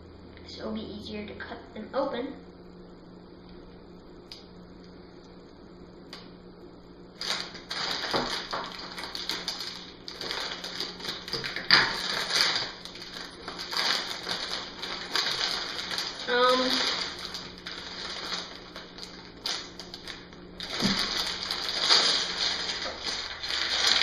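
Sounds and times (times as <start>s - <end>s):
plastic bags crinkling: 7.2s - 24.0s
scissors cutting plastic: 7.2s - 24.0s.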